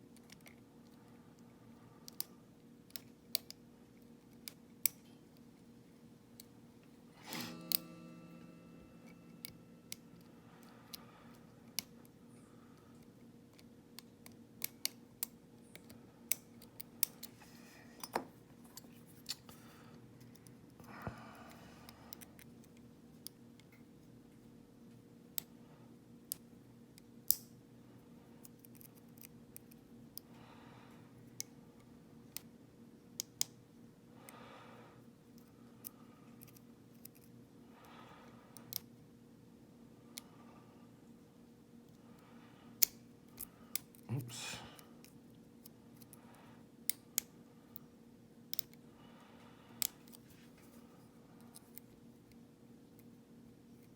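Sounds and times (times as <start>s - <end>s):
faint steady hum: 0.0s - 53.9s
tool scraping on metal: 7.1s - 9.7s.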